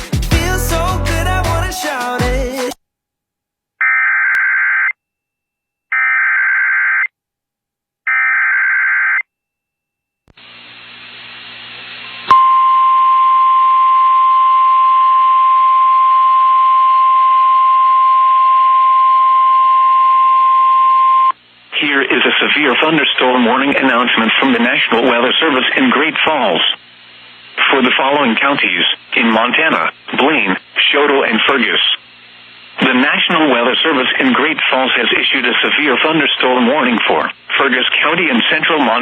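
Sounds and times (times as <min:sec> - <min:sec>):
steady warning alarm tone: 0:12.3 - 0:21.3
radio hiss: 0:21.7 - 0:39.0.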